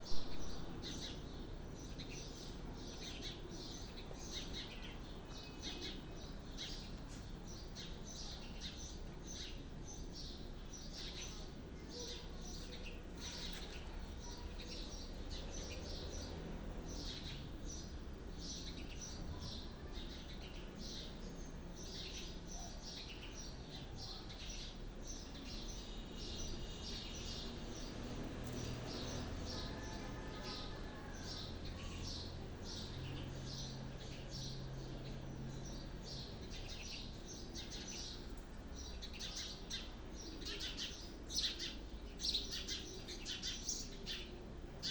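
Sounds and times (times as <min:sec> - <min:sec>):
birds chirping: 0:00.0 - 0:44.9
low background noise: 0:00.0 - 0:44.9.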